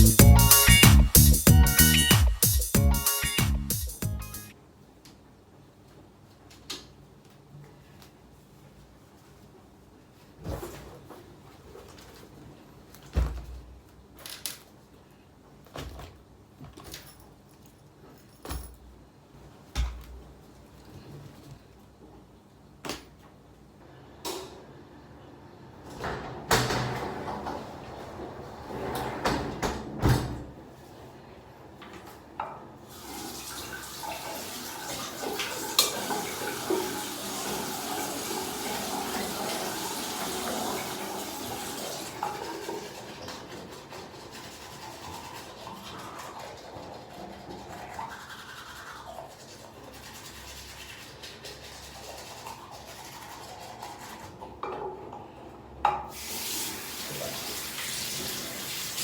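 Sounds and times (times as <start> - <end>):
water running from a tap: 32.9 - 49.4, 56.1 - 59.0.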